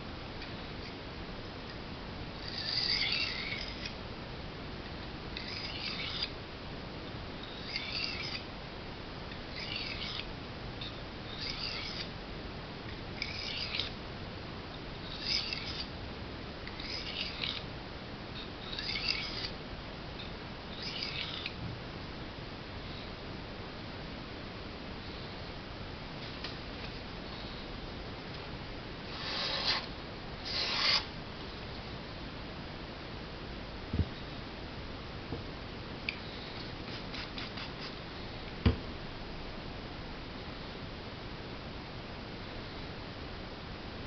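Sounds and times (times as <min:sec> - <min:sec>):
knife scraping on whetstone: 0:02.4 - 0:04.0, 0:05.4 - 0:06.3, 0:07.4 - 0:08.4, 0:09.6 - 0:10.3, 0:11.3 - 0:12.1, 0:13.2 - 0:14.0, 0:15.1 - 0:15.9, 0:16.6 - 0:17.6, 0:18.6 - 0:19.6, 0:20.8 - 0:21.6, 0:29.1 - 0:31.1, 0:36.9 - 0:38.0.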